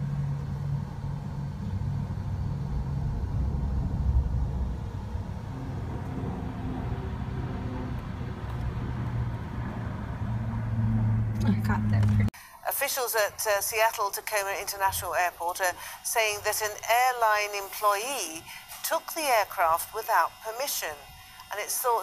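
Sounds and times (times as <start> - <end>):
low engine rumble: 0.0 - 12.4.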